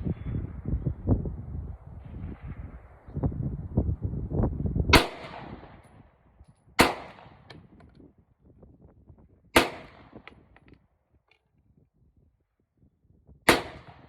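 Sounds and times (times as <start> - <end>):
pistol shots: 5.0 - 5.8, 6.8 - 7.7, 9.6 - 10.4, 13.5 - 14.0.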